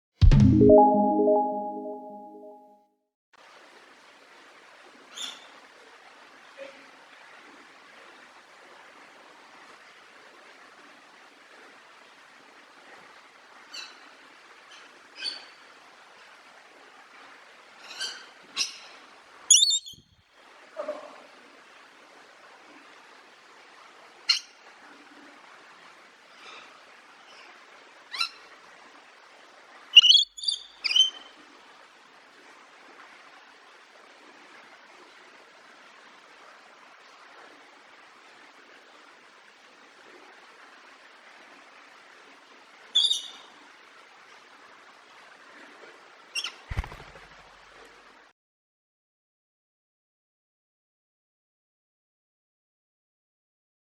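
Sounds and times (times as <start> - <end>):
parrot calls and chirps: 19.5 - 20.0, 30.0 - 31.2, 43.0 - 43.4.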